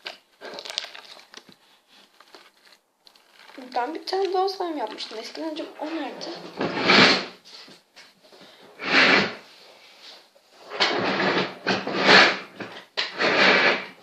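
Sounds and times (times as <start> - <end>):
rummaging and scraping: 0.0 - 7.8
drawer being worked: 5.8 - 7.4, 10.6 - 14.0.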